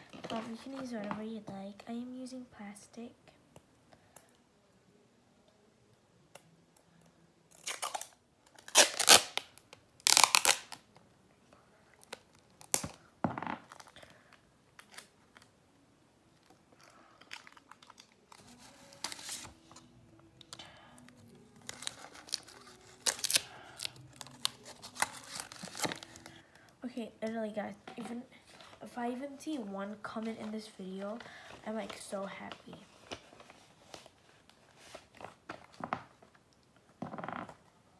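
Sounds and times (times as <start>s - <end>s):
plastic crumpling and tearing: 7.5s - 10.8s, 14.8s - 15.5s, 16.4s - 26.4s.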